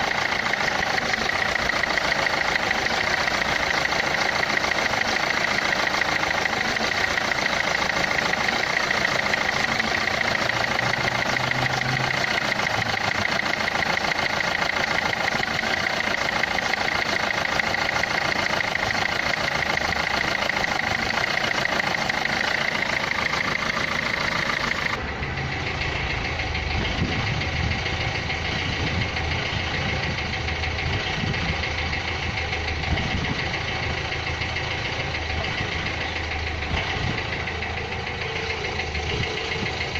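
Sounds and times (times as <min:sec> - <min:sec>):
diesel engine idling with clatter: 0:00.0 - 0:39.9.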